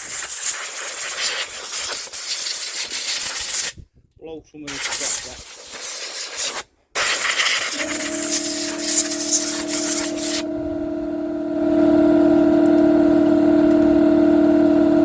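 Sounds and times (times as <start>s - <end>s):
air blow gun hissing: 0.0s - 3.8s, 4.7s - 10.5s
air compressor droning: 7.0s - 15.0s.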